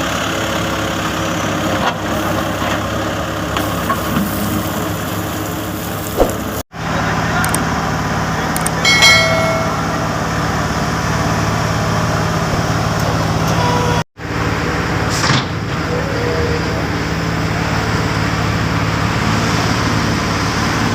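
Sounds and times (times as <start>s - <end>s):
diesel machinery engine running: 0.0s - 20.9s.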